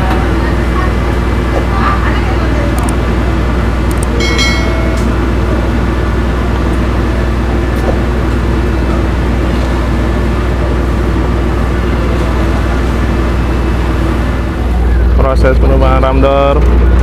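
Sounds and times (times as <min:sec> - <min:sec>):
diesel machinery droning: 0:00.0 - 0:17.0.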